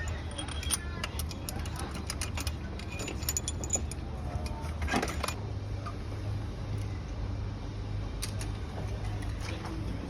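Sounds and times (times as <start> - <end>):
metal tools clinking and rattling: 0.0 - 5.4
steady low hum: 0.0 - 10.0.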